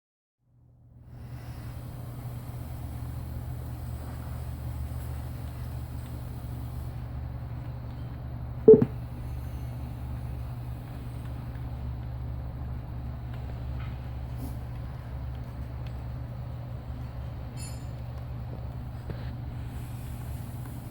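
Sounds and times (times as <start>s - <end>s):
brief loud tone: 8.7s - 8.9s
computer humming: 8.7s - 8.9s.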